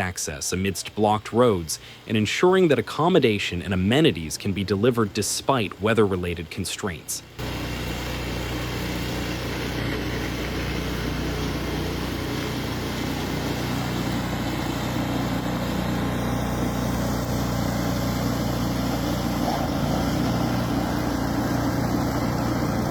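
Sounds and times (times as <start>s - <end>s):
engine running steadily: 7.3s - 22.9s.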